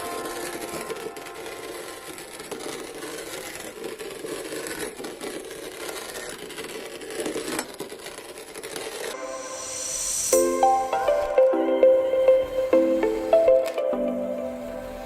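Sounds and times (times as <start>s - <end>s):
sand scraping: 0.0s - 10.8s.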